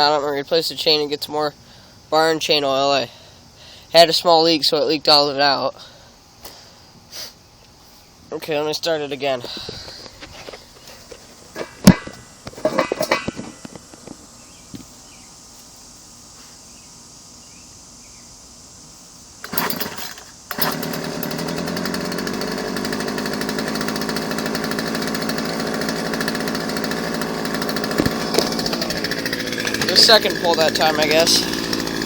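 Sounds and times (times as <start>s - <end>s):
chainsaw engine running: 19.4s - 32.0s
chainsaw starter cord pull: 19.4s - 32.0s.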